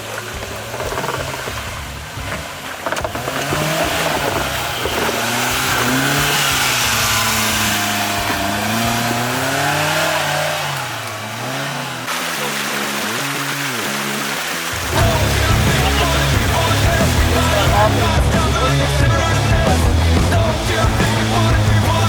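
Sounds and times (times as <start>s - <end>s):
engine revving under load: 0.0s - 22.0s
rushing noise: 0.0s - 22.0s.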